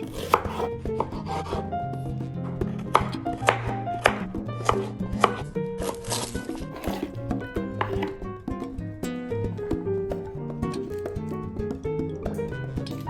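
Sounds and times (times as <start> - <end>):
knife chopping on cutting board: 0.0 - 1.7, 2.6 - 8.2
background music: 0.0 - 13.0.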